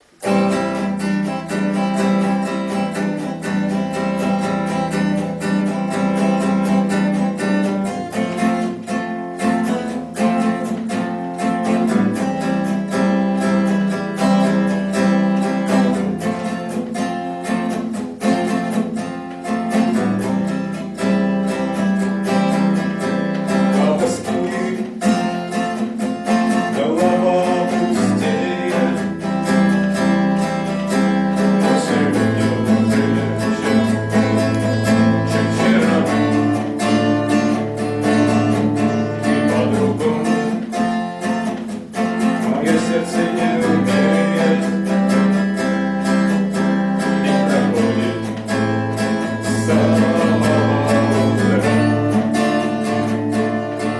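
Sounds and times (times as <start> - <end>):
strummed acoustic guitar: 0.0 - 53.9
person singing: 23.4 - 25.4, 26.5 - 29.8, 30.6 - 41.0, 42.1 - 45.5, 47.0 - 53.9.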